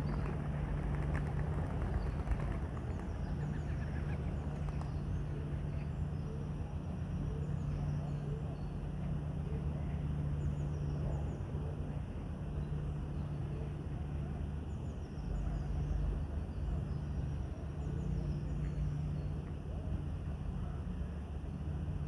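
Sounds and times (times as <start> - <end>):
low rumbling hum: 0.0 - 4.8.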